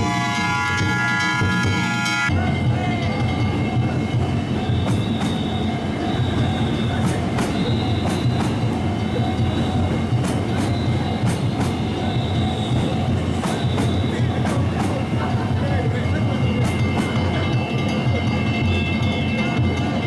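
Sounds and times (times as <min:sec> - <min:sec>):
high wheel squeal: 0:00.0 - 0:02.4, 0:03.5 - 0:15.2
train wheels rumbling on rail: 0:00.0 - 0:20.0
wheels clicking over rail joints: 0:04.5 - 0:17.7.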